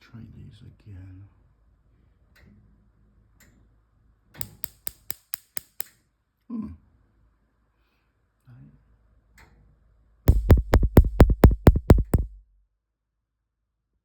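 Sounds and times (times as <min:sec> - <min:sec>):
faint knocks: 0:10.3 - 0:12.4.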